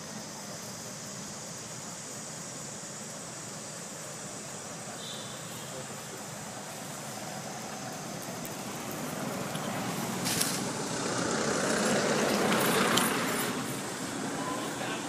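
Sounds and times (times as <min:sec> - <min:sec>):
motor vehicle passing by: 0:07.2 - 0:15.0.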